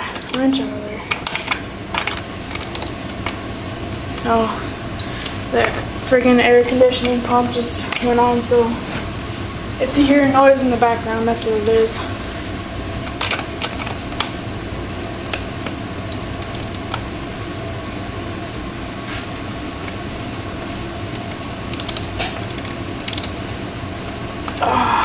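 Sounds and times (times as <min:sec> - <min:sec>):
air conditioning unit running: 0:00.0 - 0:25.0
wrench clicking on bolt: 0:16.4 - 0:16.8, 0:21.1 - 0:23.4.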